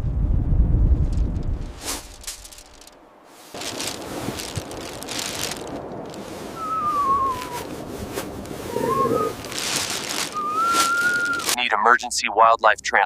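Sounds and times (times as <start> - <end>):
wind rumbling on microphone: 0.0 - 11.6
hissing rustling wind: 0.4 - 11.6
thin whistle-like gliding call: 6.5 - 7.7, 8.6 - 9.5, 10.2 - 11.6.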